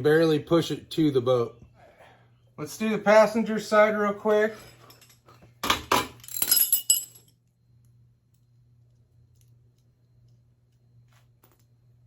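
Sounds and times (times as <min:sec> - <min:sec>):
faint low hum: 0:00.0 - 0:12.0
metal tools clinking: 0:04.5 - 0:07.4.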